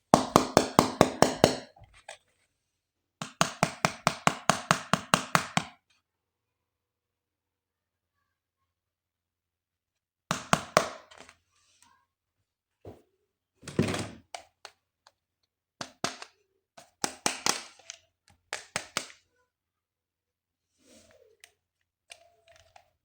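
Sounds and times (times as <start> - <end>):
plastic packaging clicks and taps: 15.8 - 19.2.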